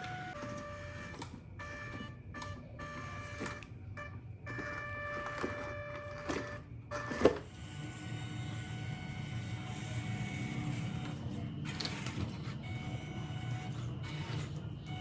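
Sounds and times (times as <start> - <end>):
toy truck electric motor whining: 0.0 - 15.0.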